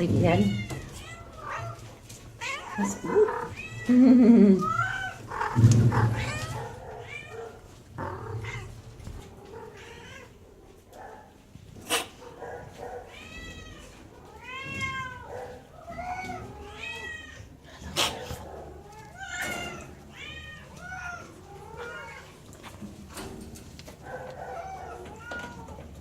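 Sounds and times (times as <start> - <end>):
cats meowing: 0.0 - 10.8, 11.8 - 26.0.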